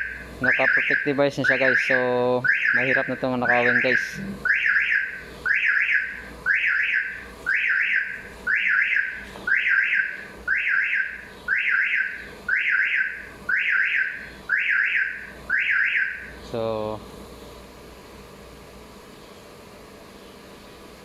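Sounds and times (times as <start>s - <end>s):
car alarm siren whooping: 0.0s - 16.3s.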